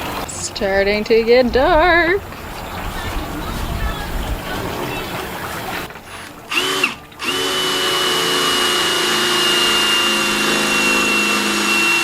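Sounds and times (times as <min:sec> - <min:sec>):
power drill whining: 0:06.1 - 0:12.0.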